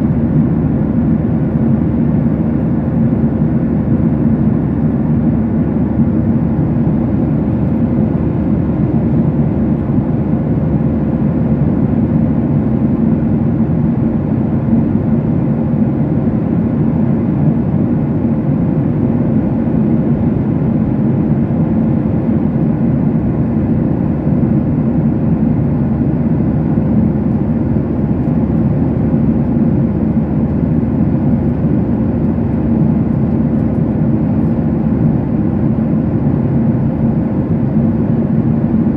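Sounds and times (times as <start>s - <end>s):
airliner cabin drone: 0.0s - 38.9s.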